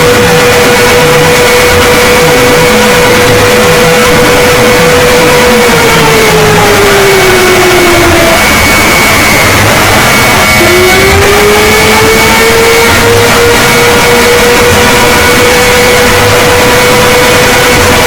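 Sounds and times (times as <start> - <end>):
distorted alarm siren: 0.0 - 18.0
harsh noise: 0.0 - 18.0
higher steady tone: 0.0 - 18.0.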